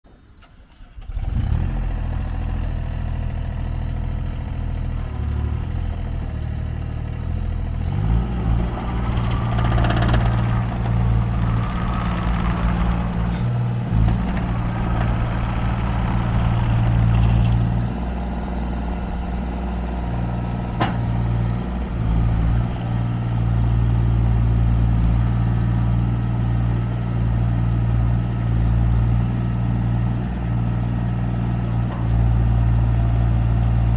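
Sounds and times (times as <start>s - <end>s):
excavator diesel engine running: 0.1s - 33.9s
clatter: 7.0s - 18.0s.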